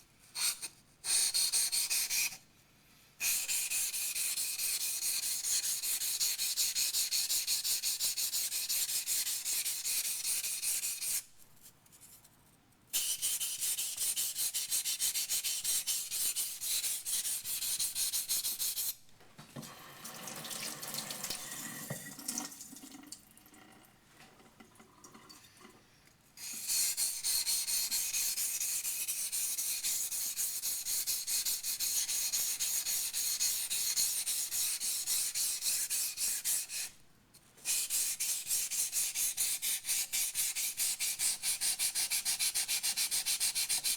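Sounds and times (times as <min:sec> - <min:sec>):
quiet watery sound: 0:19.6 - 0:26.2.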